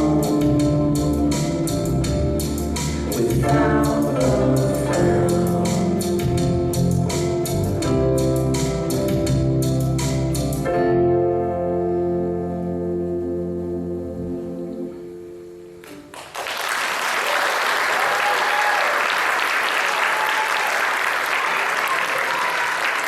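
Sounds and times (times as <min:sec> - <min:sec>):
live band playing: 0:00.0 - 0:11.3
audience applause: 0:16.1 - 0:23.0.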